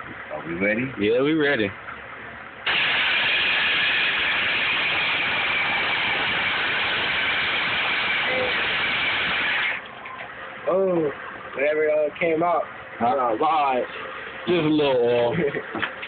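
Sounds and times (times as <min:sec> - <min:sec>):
starter motor whirring: 0:02.7 - 0:10.4.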